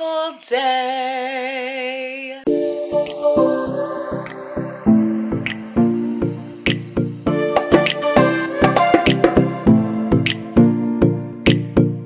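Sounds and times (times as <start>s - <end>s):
upbeat intro music: 2.5s - 12.0s.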